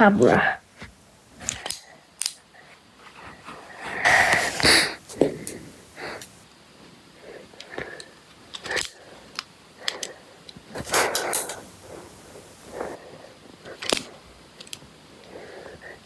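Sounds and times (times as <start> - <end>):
plastic pieces clicking: 1.4 - 2.4, 8.5 - 10.1.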